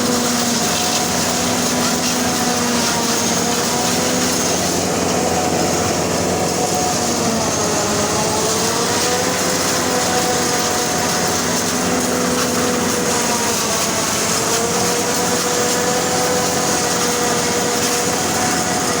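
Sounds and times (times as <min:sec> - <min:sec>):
combine harvester drone and whine: 0:00.0 - 0:19.0.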